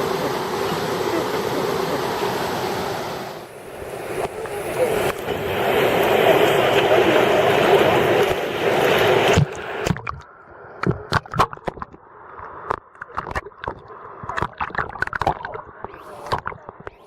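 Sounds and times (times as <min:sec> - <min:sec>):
loud rush of water: 0:00.0 - 0:10.0
water sloshing and gurgling: 0:07.7 - 0:17.0
knocks and splashes: 0:08.2 - 0:17.0.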